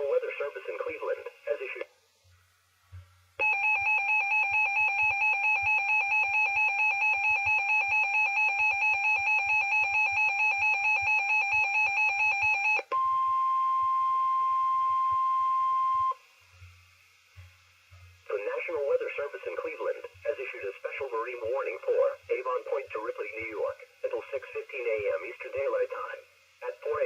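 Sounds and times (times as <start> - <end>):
steady single-pitch alarm tone: 3.4 - 16.2.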